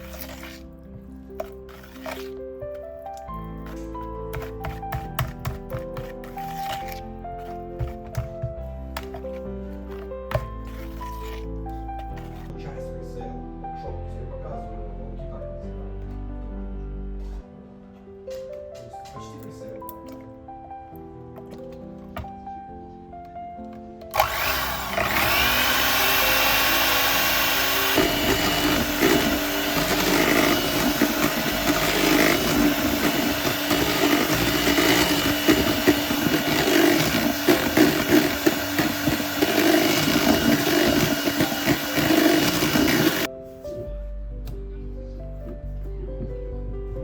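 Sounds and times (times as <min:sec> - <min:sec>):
quiet background music: 0:00.0 - 0:47.0
electric mixer running: 0:24.1 - 0:43.3.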